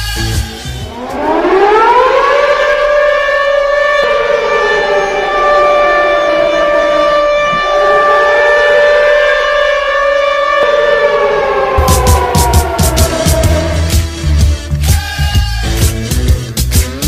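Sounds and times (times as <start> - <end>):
siren goal horn: 0.1 - 14.8
fainter lower siren tone: 0.8 - 14.4.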